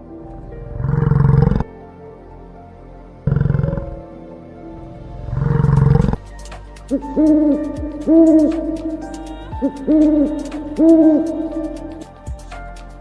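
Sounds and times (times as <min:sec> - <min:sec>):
owl hooting: 0:06.9 - 0:12.2.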